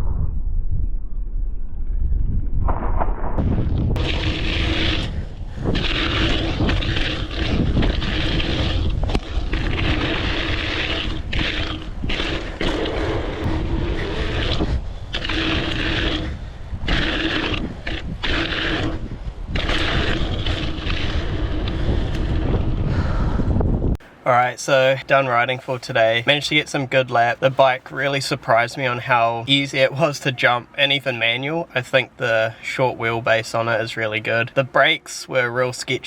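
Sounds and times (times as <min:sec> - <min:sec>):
wind buffeting microphone: 0:00.0 - 0:24.0
bike tyres rolling on rough track: 0:03.7 - 0:23.2.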